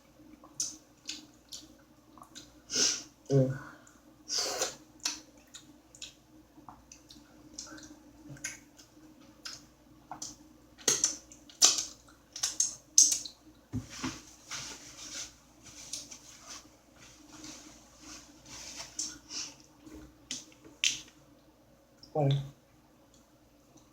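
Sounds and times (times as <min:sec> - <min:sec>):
chewing and mouth noises: 0:00.4 - 0:02.6.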